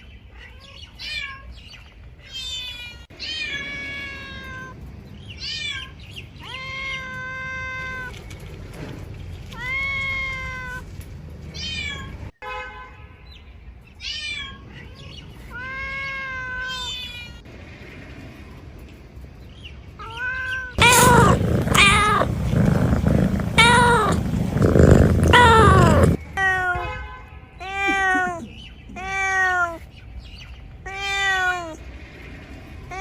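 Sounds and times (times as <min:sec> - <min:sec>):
cat meowing: 0:20.0 - 0:27.0, 0:27.6 - 0:29.9, 0:30.9 - 0:31.8
low rumbling noise: 0:20.8 - 0:26.2.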